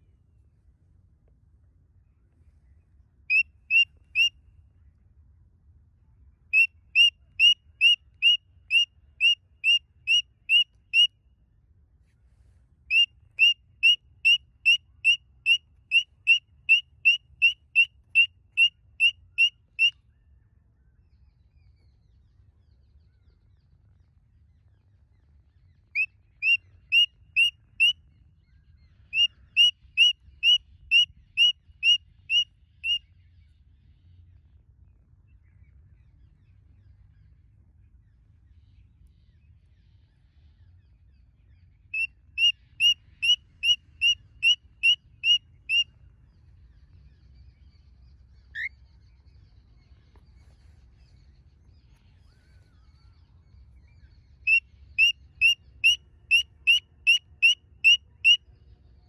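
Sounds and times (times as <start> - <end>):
cockatiel whistled chirps: 3.3 - 4.3, 6.6 - 11.1, 54.5 - 58.4.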